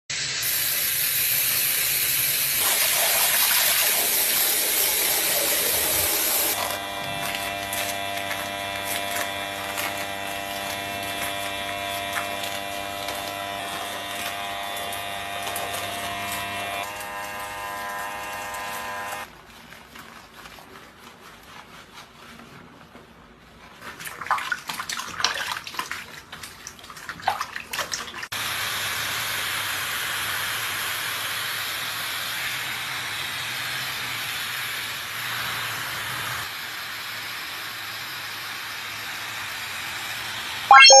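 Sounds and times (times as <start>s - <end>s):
water spraying hiss: 0.1s - 6.6s
small electric motor humming: 4.7s - 19.3s.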